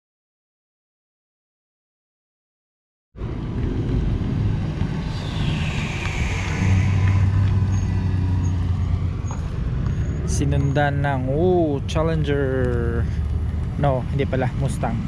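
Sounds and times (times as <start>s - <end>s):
cars driving past: 3.2s - 15.0s.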